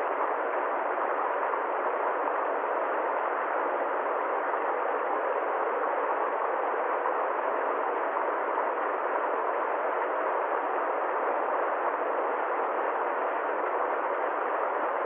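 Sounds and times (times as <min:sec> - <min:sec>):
constant rushing hiss: 0:00.0 - 0:15.0.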